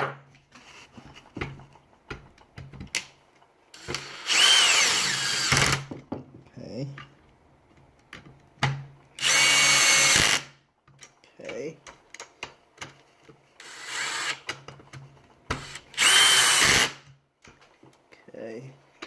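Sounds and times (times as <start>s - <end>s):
power drill driving screw: 3.7s - 5.9s, 9.2s - 10.5s, 13.6s - 14.6s, 15.5s - 17.0s.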